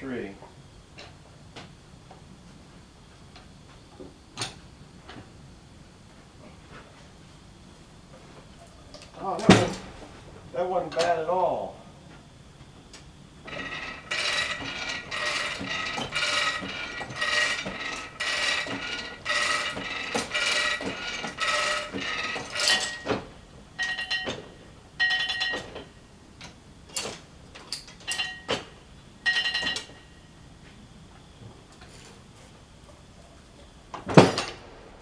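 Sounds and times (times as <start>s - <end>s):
metal ratchet clanking: 13.4s - 25.9s, 26.9s - 30.0s.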